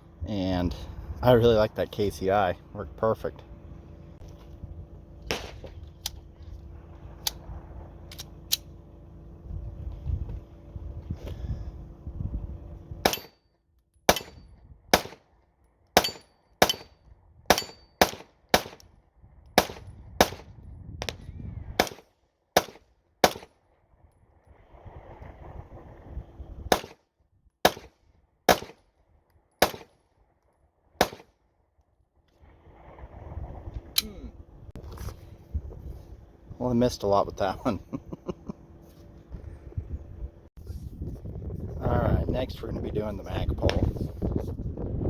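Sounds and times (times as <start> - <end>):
pistol firing single shots: 5.3 - 5.7, 14.1 - 15.2, 16.0 - 16.9, 17.5 - 18.8, 19.6 - 20.4, 21.8 - 22.0, 22.6 - 23.5, 26.7 - 27.0, 27.6 - 27.9, 28.5 - 28.8, 29.6 - 29.9, 31.0 - 31.3.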